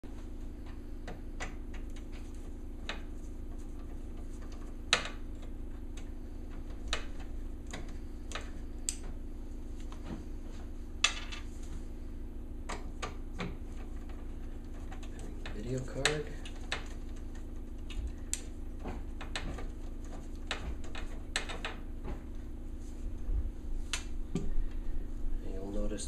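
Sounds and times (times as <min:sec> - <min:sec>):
steady low hum: 0:00.0 - 0:26.0
computer hardware clicks and knocks: 0:02.8 - 0:09.2, 0:12.6 - 0:22.2.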